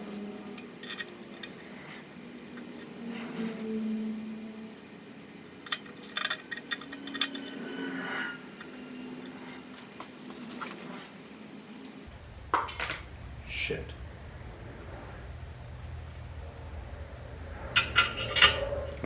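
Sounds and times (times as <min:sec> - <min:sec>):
faint steady hum: 0:00.0 - 0:12.4
small metal hardware clinking: 0:00.4 - 0:04.0, 0:04.8 - 0:12.1.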